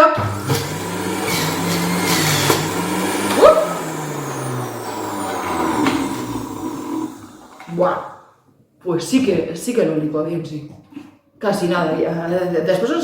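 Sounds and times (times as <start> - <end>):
electric juicer motor humming: 0.0 - 8.2
produce grinding and rattling: 0.0 - 8.2.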